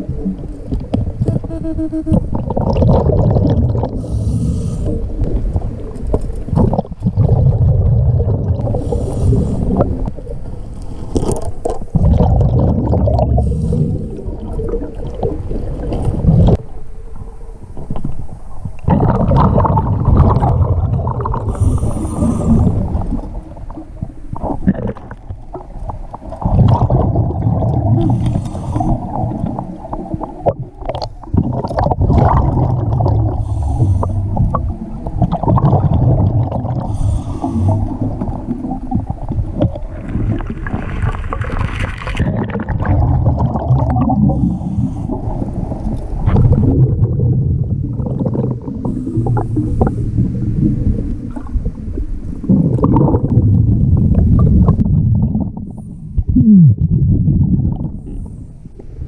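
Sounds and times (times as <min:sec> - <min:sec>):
water and bubbles rumbling: 0:00.0 - 0:59.0
diver breathing hiss: 0:04.0 - 0:05.2, 0:08.8 - 0:09.8, 0:21.5 - 0:22.9, 0:28.0 - 0:29.2, 0:33.4 - 0:34.5, 0:36.9 - 0:38.0, 0:44.3 - 0:45.8.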